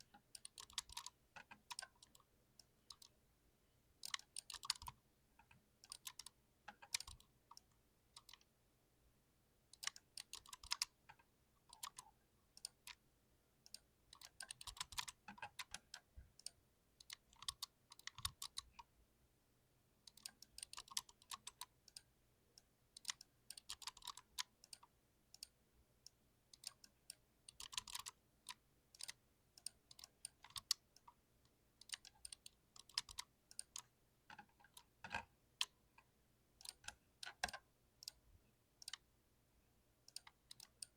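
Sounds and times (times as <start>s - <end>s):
mechanical keyboard typing: 0.0s - 2.2s, 4.0s - 5.0s, 5.8s - 7.3s, 8.2s - 8.5s, 9.8s - 11.0s, 11.7s - 13.0s, 13.7s - 18.8s, 20.1s - 22.0s, 23.0s - 25.5s, 26.6s - 30.8s, 31.8s - 33.9s, 36.6s - 38.2s.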